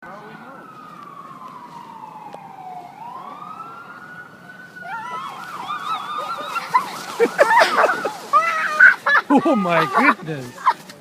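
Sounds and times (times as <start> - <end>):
emergency siren wailing: 0.0 - 10.2
short wavering high calls: 4.8 - 9.2.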